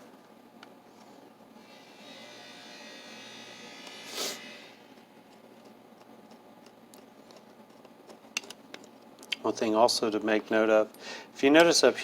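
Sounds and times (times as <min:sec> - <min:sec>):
electric screwdriver whirring: 0:02.6 - 0:04.8.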